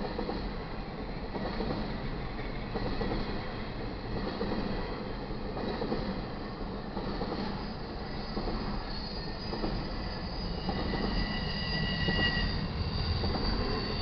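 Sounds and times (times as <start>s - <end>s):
train wheels clattering on rails: 0.0s - 14.0s
high ringing from wheels: 8.8s - 14.0s.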